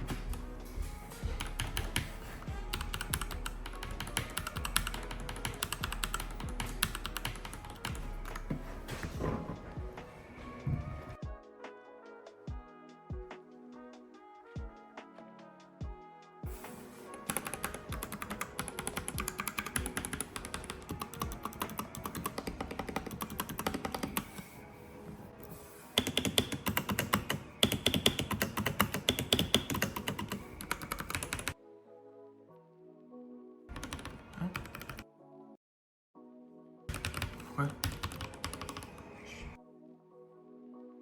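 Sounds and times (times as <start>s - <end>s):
background music: 0.0s - 35.6s, 36.2s - 41.0s
typing on mechanical keyboard: 1.4s - 9.1s, 17.1s - 24.6s, 26.0s - 31.6s, 33.7s - 35.0s, 36.9s - 39.1s.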